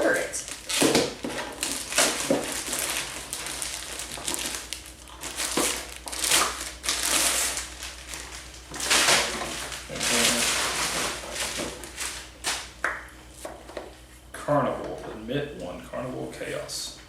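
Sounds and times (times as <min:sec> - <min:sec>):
paper and packaging crinkling: 0:00.0 - 0:12.8.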